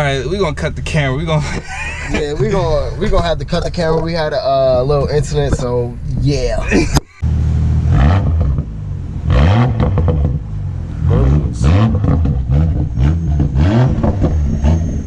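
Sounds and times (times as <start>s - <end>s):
car engine revving: 7.2s - 15.0s.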